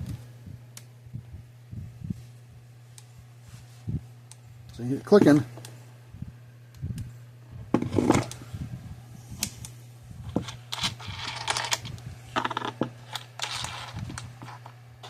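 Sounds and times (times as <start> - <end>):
steady low hum: 0.0 - 15.0
rustling and handling noise: 1.8 - 6.0, 7.6 - 15.0.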